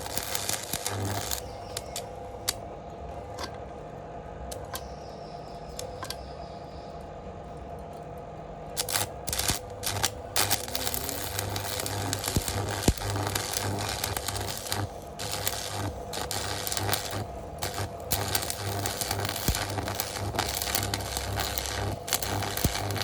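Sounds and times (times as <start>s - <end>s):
welding arc crackling: 0.0s - 2.6s, 8.7s - 23.0s
welder low hum: 0.0s - 7.5s, 8.4s - 23.0s.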